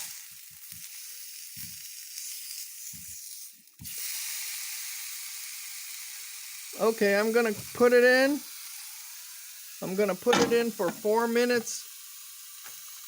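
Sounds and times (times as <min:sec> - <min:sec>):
meat sizzling on grill pan: 0:00.0 - 0:13.0.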